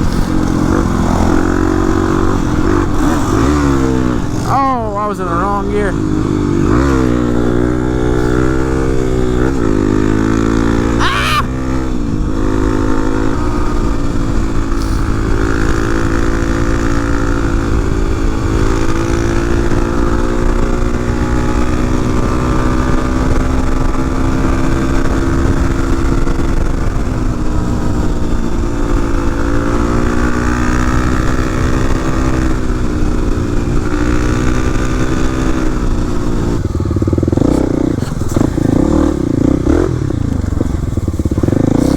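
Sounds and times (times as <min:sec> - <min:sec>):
wind rushing: 0:00.0 - 0:05.0
dirt bike engine revving: 0:00.0 - 0:41.9.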